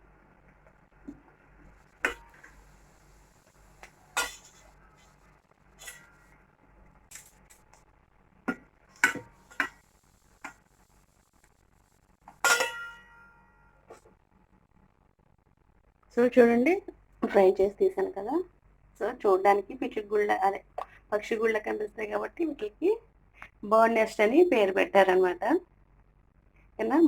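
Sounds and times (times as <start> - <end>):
metal utensil clinking on pan: 4.2 - 4.6, 5.8 - 6.3, 12.4 - 13.2.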